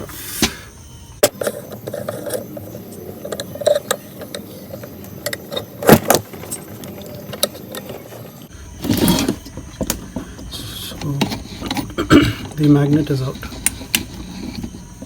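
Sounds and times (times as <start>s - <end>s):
hand tools clicking and clinking: 1.2s - 15.0s.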